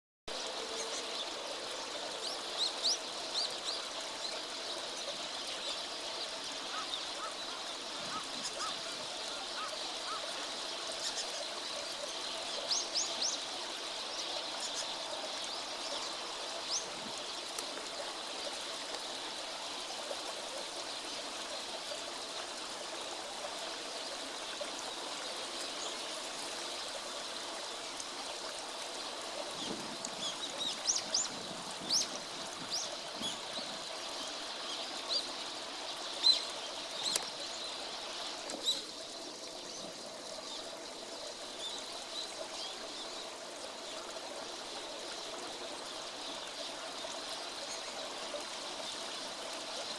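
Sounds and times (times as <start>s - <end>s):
flowing water: 0.3s - 49.9s.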